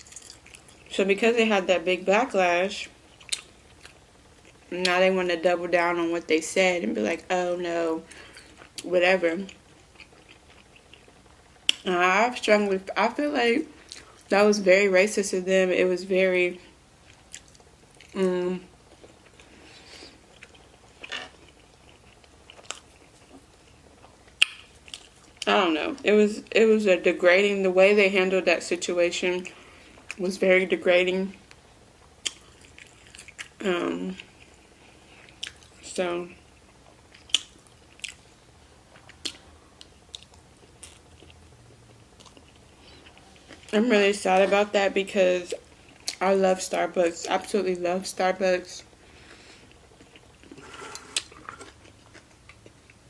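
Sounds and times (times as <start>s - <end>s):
chewing food: 0.0s - 0.9s, 3.0s - 4.7s, 8.1s - 11.9s, 17.0s - 25.5s, 31.4s - 43.8s, 45.5s - 46.2s, 48.8s - 53.0s.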